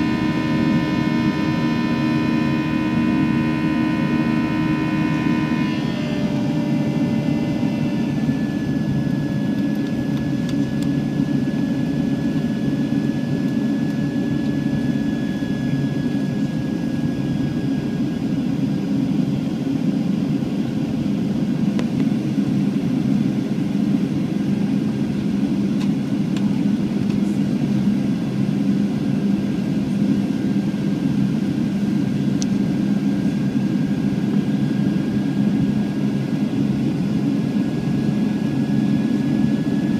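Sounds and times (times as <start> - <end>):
faint descending whine: 0.0 - 18.2
jet engines rumbling in cabin: 0.0 - 39.9.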